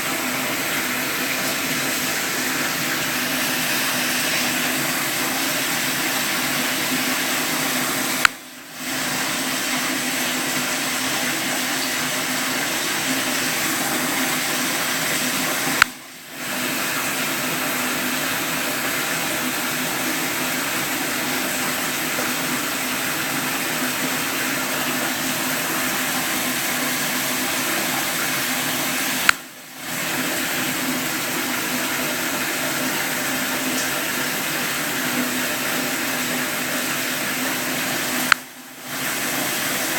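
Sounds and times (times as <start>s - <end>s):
rushing water: 0.0s - 39.9s
sharp click: 15.8s - 16.0s.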